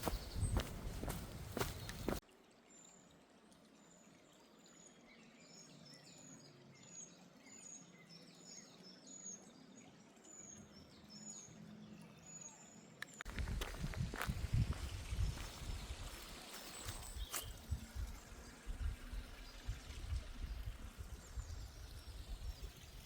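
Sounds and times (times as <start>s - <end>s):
footsteps: 0.0s - 2.2s, 13.3s - 17.6s
small bird chirping: 0.0s - 2.2s.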